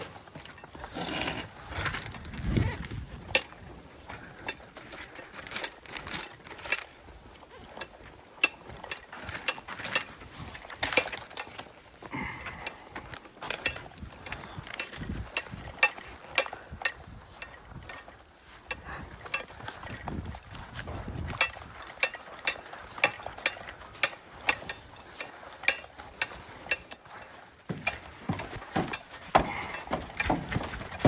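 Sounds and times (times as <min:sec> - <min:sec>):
sharp clicks and knocks: 0:27.7 - 0:31.0.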